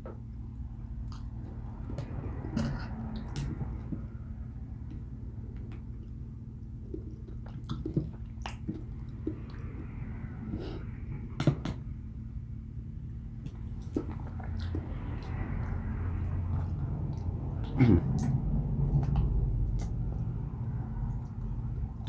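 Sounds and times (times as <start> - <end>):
steady low hum: 0.0 - 22.0
person chewing: 1.0 - 11.0, 13.3 - 22.0.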